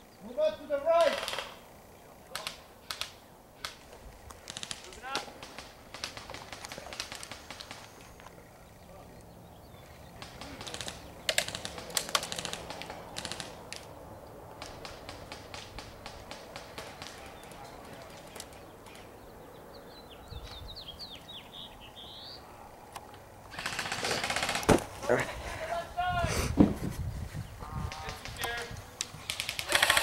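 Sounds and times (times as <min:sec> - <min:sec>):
airsoft guns firing: 0:00.9 - 0:01.6, 0:02.3 - 0:03.8, 0:04.4 - 0:08.0, 0:10.1 - 0:13.9, 0:14.5 - 0:19.0, 0:23.5 - 0:24.9, 0:27.9 - 0:30.0.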